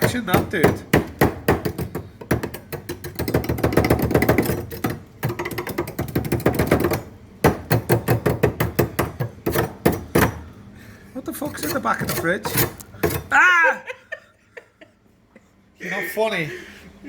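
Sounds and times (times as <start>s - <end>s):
tool chipping at ice: 0.0s - 10.4s.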